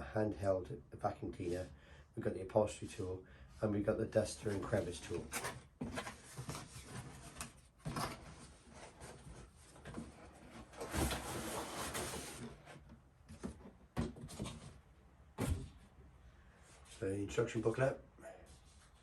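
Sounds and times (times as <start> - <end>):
packaging rustling and scraping: 4.4 - 14.8.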